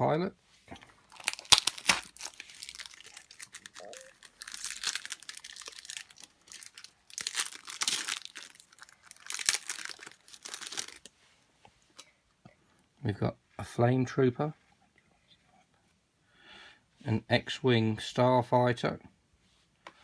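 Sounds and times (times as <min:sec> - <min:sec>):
plastic wrapper crinkling and tearing: 0:00.9 - 0:11.1.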